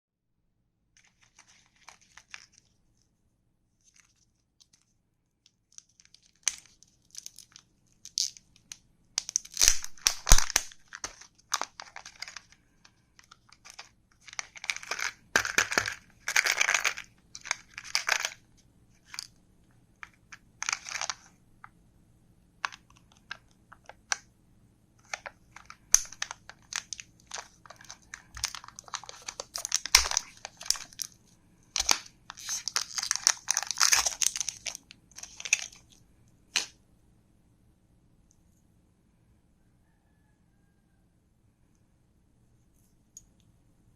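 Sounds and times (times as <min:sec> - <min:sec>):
candy wrappers crinkling and tearing: 0:01.0 - 0:03.0, 0:05.5 - 0:19.4, 0:20.0 - 0:21.4, 0:22.6 - 0:24.2, 0:25.0 - 0:36.7.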